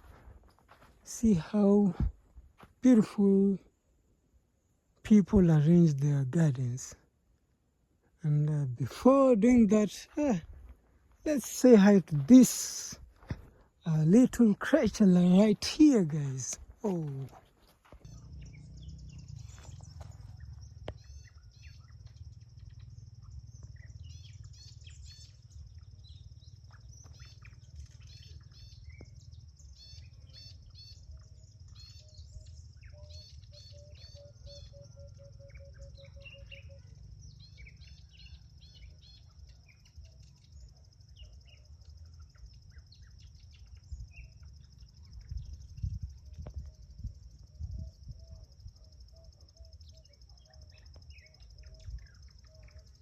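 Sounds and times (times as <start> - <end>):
birds chirping and trilling: 0.0 - 53.0
steady low rumble: 18.0 - 28.0.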